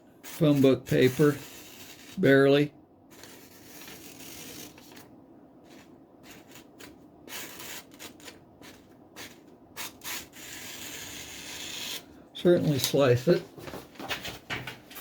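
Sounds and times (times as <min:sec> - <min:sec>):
knife cutting paper: 0:00.2 - 0:02.4, 0:03.1 - 0:05.1, 0:05.7 - 0:12.1
scratchy paper rustles: 0:03.1 - 0:05.1.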